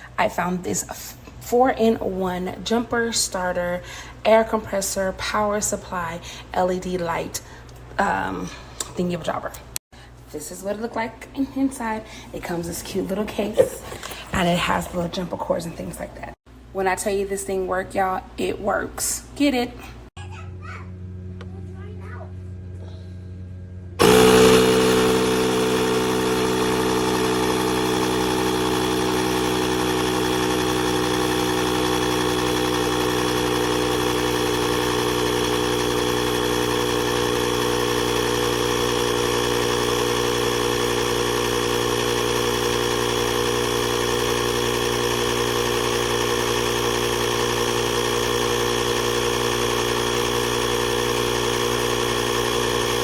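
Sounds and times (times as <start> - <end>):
small air compressor droning: 22.7 - 53.0.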